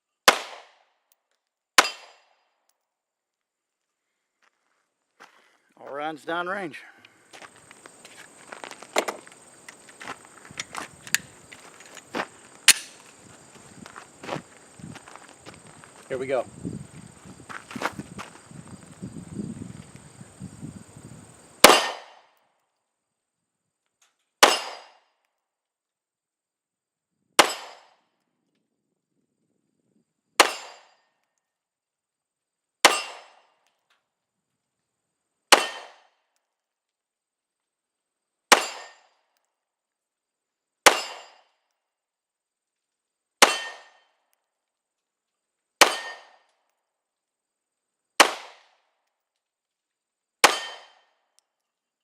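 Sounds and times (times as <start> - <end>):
pistol shots: 0.2 - 0.8, 1.8 - 2.3, 12.7 - 13.0, 21.6 - 22.2, 24.4 - 25.0, 27.4 - 27.9, 30.4 - 30.8, 35.5 - 36.1, 38.5 - 39.0, 40.9 - 41.3, 43.4 - 44.0, 45.8 - 46.4, 48.2 - 48.6, 50.4 - 51.0.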